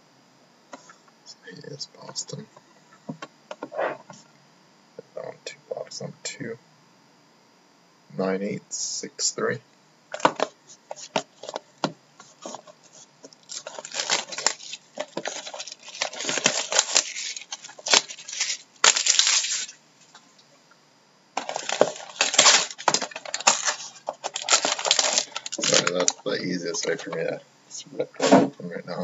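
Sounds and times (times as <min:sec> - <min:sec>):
plastic wrap crackling: 0:13.3 - 0:19.8, 0:21.4 - 0:27.1
cardboard tearing: 0:13.4 - 0:19.8, 0:21.4 - 0:26.3.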